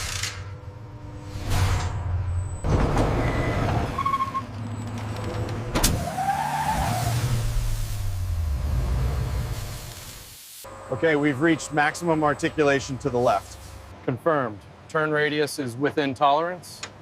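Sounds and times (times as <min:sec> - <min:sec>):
road roller engine droning: 0:10.7 - 0:13.9.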